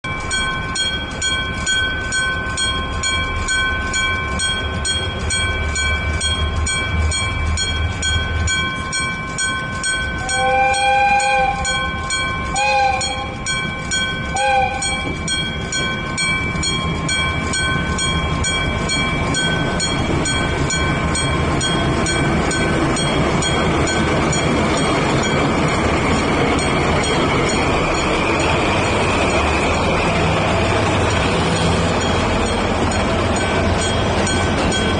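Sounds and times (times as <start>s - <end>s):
level-crossing bell ringing: 0.0s - 34.9s
train rumble and wheel noise: 0.0s - 34.9s
two-note train horn: 10.2s - 11.9s, 12.5s - 13.4s, 14.3s - 15.0s.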